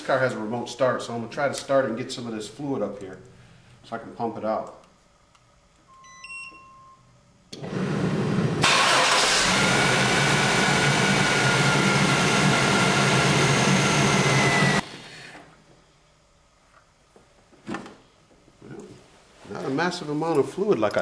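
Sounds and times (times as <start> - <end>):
car engine cranking and running: 7.6 - 14.8.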